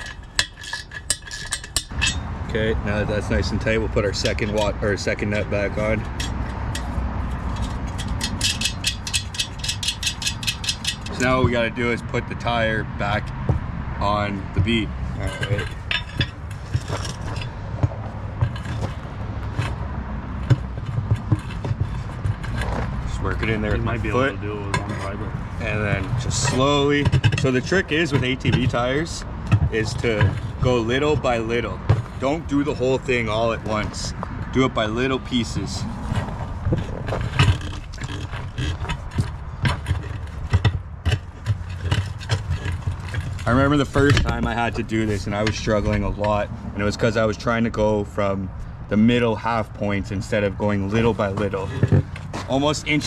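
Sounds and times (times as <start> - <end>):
metal knocks and clanks: 0.0 - 47.8, 49.2 - 53.0
crowbars scraping on wheel rim: 0.0 - 48.0, 49.0 - 53.0.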